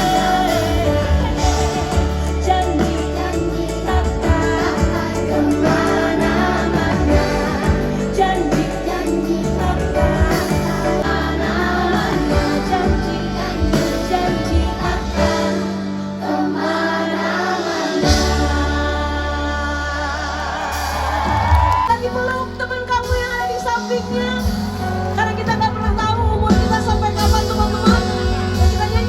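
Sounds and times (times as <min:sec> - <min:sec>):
crowd singing along: 0:00.0 - 0:22.0
live pop band music: 0:00.0 - 0:29.0.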